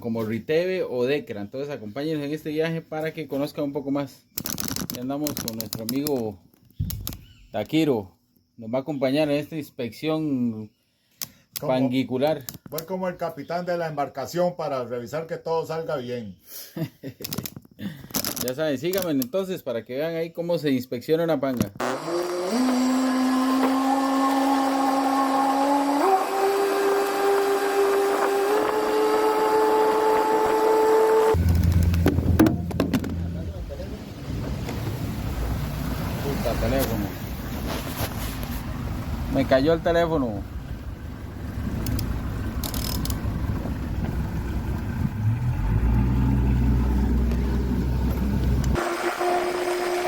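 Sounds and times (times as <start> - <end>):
wind: 0.0 - 50.0
outboard motor whining: 21.8 - 33.5, 38.4 - 50.0
water rushing: 21.8 - 37.7, 38.6 - 50.0.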